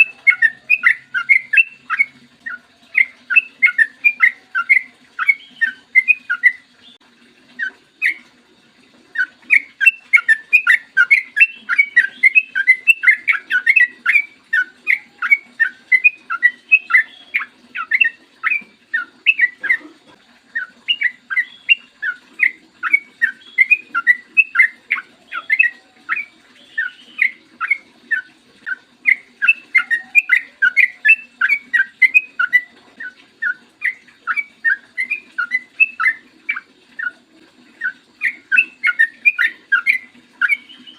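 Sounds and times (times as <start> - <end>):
bulbul singing bubbling notes: 0.0 - 7.0, 9.2 - 19.9.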